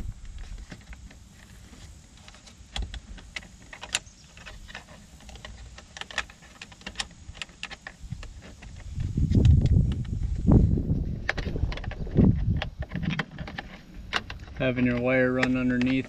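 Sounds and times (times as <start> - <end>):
small plastic parts clicking: 2.2 - 10.2.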